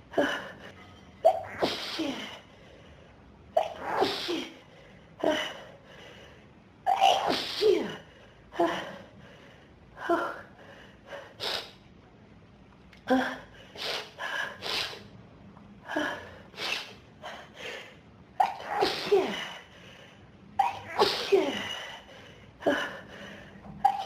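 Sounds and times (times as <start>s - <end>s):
person sneezing: 1.3s - 2.4s, 3.6s - 4.6s, 6.9s - 8.0s, 18.4s - 19.6s, 20.6s - 21.8s.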